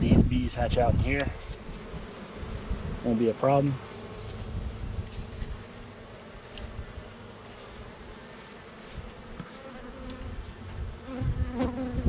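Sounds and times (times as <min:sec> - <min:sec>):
bees buzzing: 0:01.0 - 0:12.0
faint ticks: 0:06.2 - 0:06.7.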